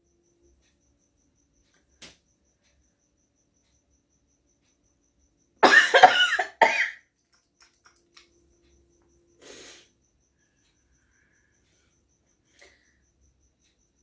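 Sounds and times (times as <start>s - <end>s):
woman coughing: 5.6s - 7.0s.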